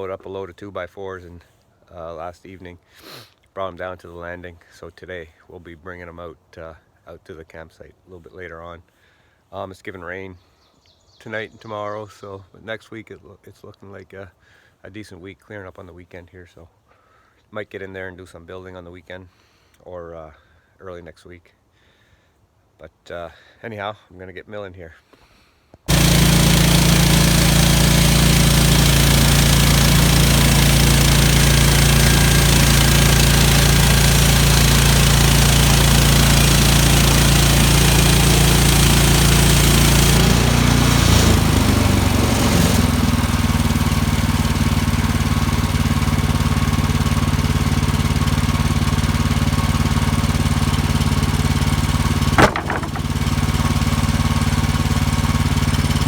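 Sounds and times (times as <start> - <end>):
small petrol engine running: 25.9 - 56.0.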